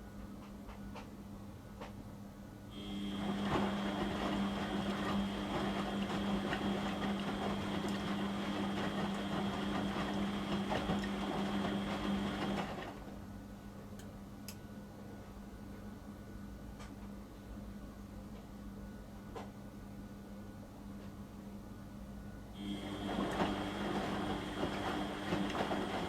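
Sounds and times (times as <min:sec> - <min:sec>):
washing machine drum motor whine: 0:02.7 - 0:13.4, 0:22.6 - 0:26.0.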